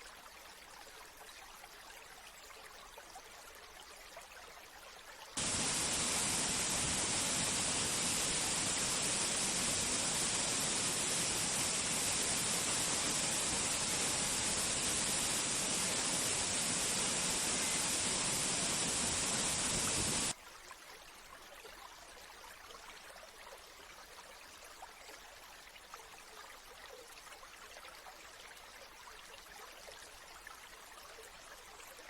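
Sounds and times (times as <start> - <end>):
water rushing: 5.4 - 20.3
water trickling: 5.4 - 20.4.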